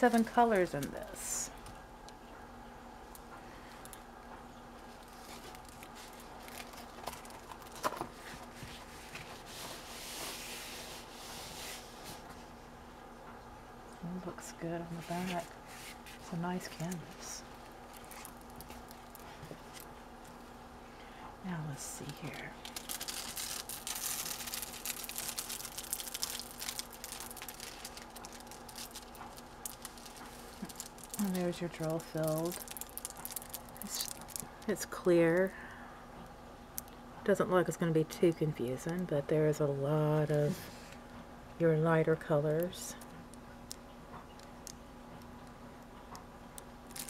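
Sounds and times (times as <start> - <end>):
plastic packaging crinkling: 0.0 - 1.4, 4.8 - 9.9, 15.2 - 20.5, 22.0 - 35.5, 46.6 - 47.0
rustling plastic film: 4.9 - 12.2, 15.0 - 20.5, 22.0 - 34.8.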